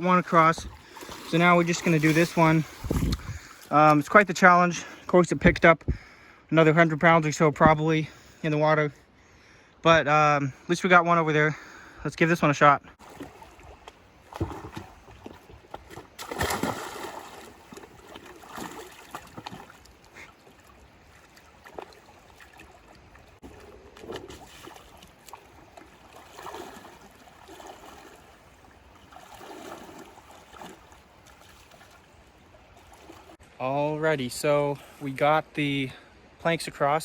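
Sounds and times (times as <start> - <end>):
water splashing and sloshing: 0.0 - 4.2, 12.9 - 33.6
river running: 0.0 - 37.0.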